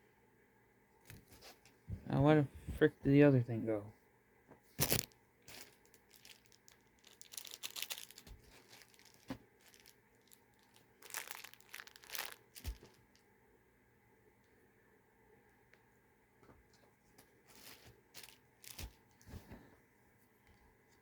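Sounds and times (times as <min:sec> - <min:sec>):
plastic packaging crinkling: 0:04.8 - 0:13.2, 0:17.5 - 0:19.2.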